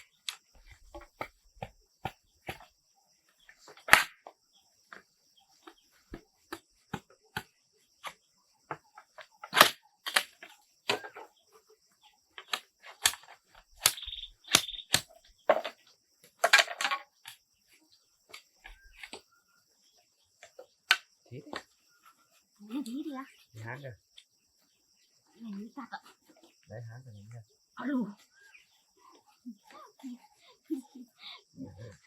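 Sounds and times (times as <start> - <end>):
high insect drone: 0.0 - 19.3.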